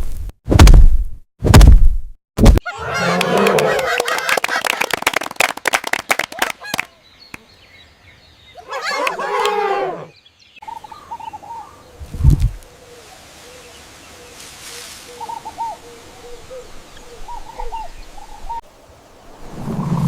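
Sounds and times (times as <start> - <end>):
heavy low thump: 0.5 - 2.6
birds chirping: 6.3 - 20.0
faint hiss: 12.8 - 17.1.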